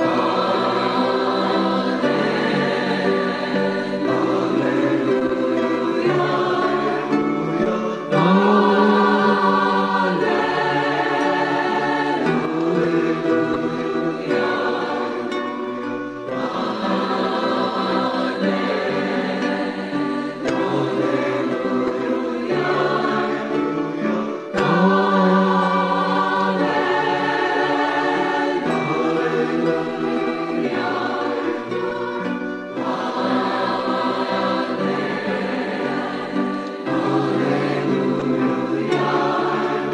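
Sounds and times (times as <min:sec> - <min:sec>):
choir singing sustained notes: 0:00.0 - 0:39.9.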